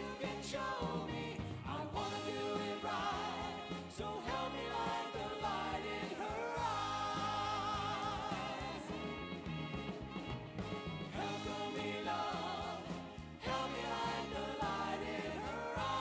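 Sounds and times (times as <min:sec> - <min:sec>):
singer with vibrato: 0:00.0 - 0:09.8
band backing music: 0:00.0 - 0:16.0.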